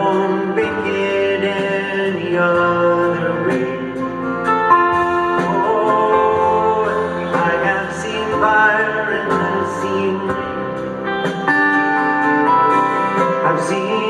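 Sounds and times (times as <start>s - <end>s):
live acoustic ballad band: 0.0s - 14.0s
person singing: 0.0s - 14.0s.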